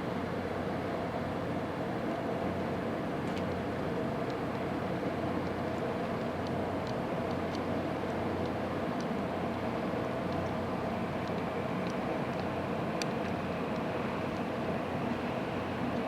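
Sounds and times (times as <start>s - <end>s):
ship engines and ventilation drone: 0.0s - 16.0s
faint ticks: 5.4s - 9.7s, 11.2s - 14.5s.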